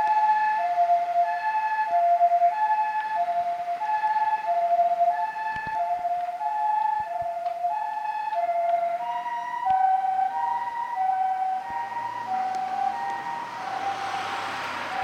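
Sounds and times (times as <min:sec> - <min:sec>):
two-tone ambulance siren: 0:00.0 - 0:15.0
vehicle road and engine noise: 0:00.0 - 0:15.0.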